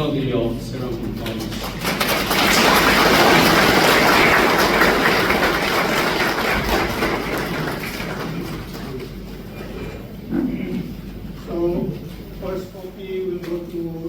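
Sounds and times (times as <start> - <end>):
audience applauding: 1.2 - 9.2.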